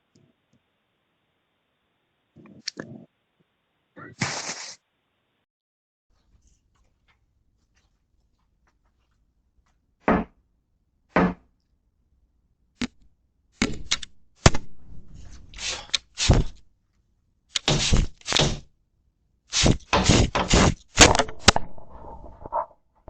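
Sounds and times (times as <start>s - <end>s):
knocking and banging on door: 10.0s - 10.4s, 11.1s - 11.5s.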